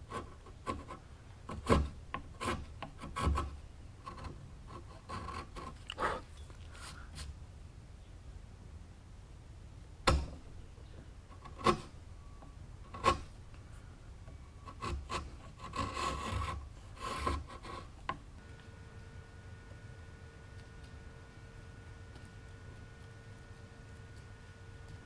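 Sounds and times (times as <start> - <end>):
rasping scraping on wood: 0.1 - 6.2, 14.7 - 17.9.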